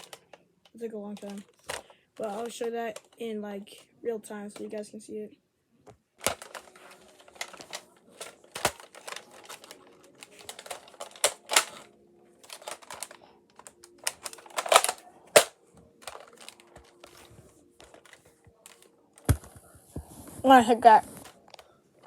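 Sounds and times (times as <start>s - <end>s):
sharp plastic snaps: 0.0s - 3.2s, 5.9s - 19.6s
plastic toy rifle clicks and rattles: 0.0s - 3.8s, 6.2s - 19.4s, 21.2s - 21.7s.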